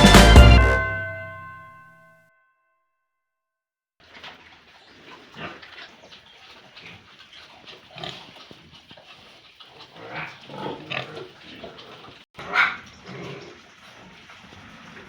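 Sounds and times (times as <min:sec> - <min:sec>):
pigs grunting: 0:06.8 - 0:08.6, 0:09.7 - 0:15.0.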